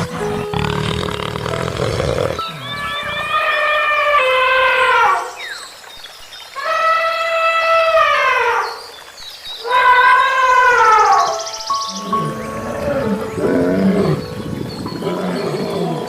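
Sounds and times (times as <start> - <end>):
animal calling: 0.0 - 5.6, 9.6 - 16.0.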